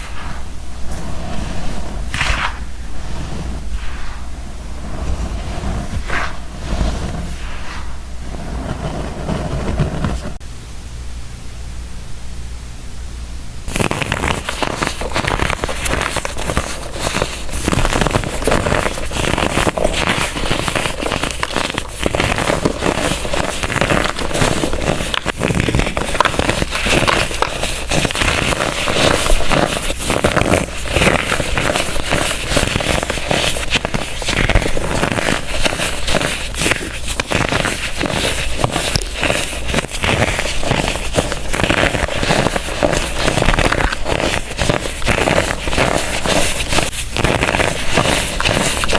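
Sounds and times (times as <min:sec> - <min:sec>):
baking soda blocks crunching: 0:13.7 - 0:48.9.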